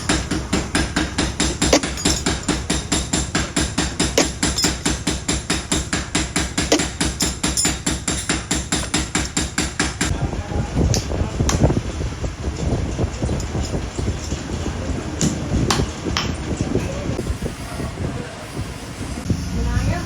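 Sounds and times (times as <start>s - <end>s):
rough clatter: 0.0s - 5.7s
loud knocks: 0.0s - 10.2s
hammer blows on metal: 0.0s - 11.7s.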